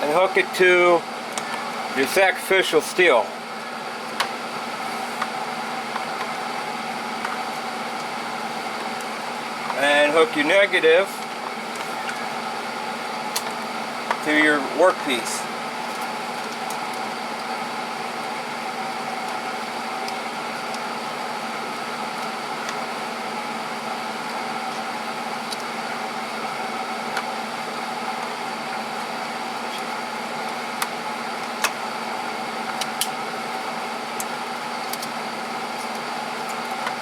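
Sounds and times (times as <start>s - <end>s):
mechanical hum with pitched tones: 0.0s - 37.0s.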